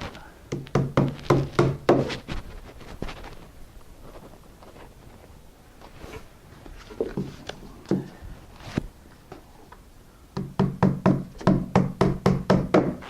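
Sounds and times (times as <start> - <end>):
hammer striking roofing nails: 0.5 - 2.2, 10.4 - 13.0.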